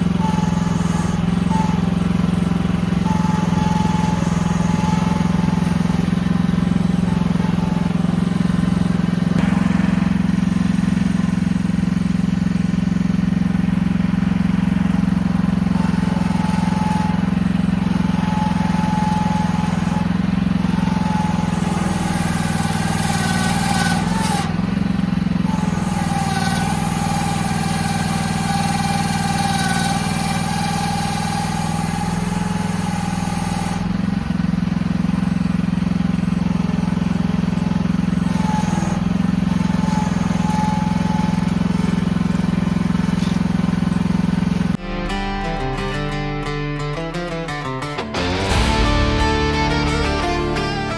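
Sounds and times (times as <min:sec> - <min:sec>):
excavator engine running: 0:00.0 - 0:50.9
high-pitched whine: 0:02.9 - 0:14.4, 0:44.8 - 0:50.9.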